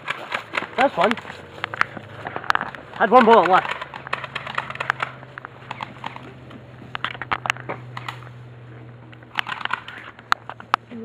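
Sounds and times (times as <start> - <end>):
airsoft guns firing: 0.0 - 1.2, 2.8 - 6.4, 9.3 - 10.1
steady low hum: 0.0 - 11.0.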